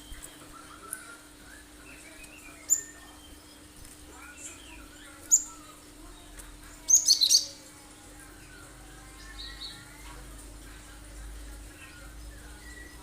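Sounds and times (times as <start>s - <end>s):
bird high piercing calls: 0.0s - 3.6s, 6.9s - 7.6s
faint bird chatter: 0.0s - 13.0s.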